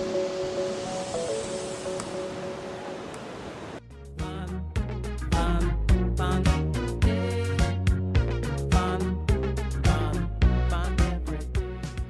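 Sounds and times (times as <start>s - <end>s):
slow melody of held notes: 0.0s - 3.5s.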